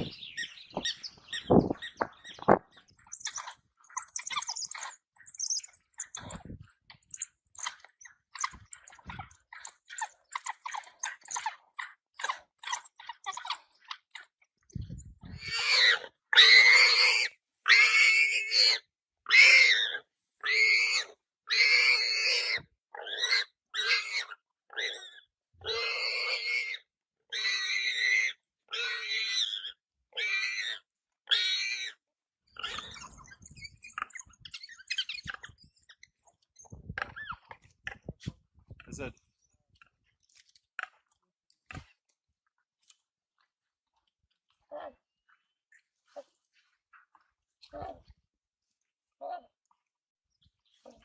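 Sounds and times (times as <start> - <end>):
warthog squealing: 0.4 - 36.1.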